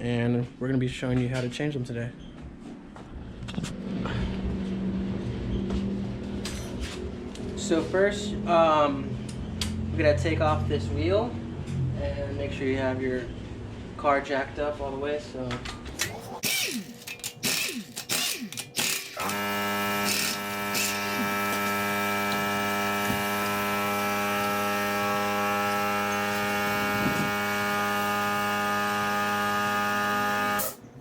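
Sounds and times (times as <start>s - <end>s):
power tool running: 16.1s - 30.8s.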